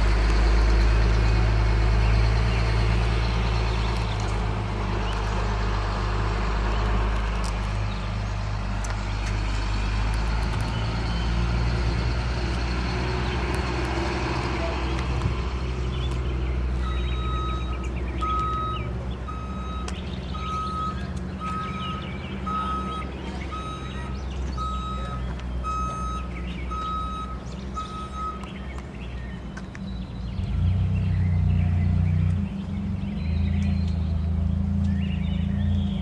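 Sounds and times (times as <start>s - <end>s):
truck engine running: 0.0s - 36.0s
truck reversing alarm beeping: 16.7s - 29.4s.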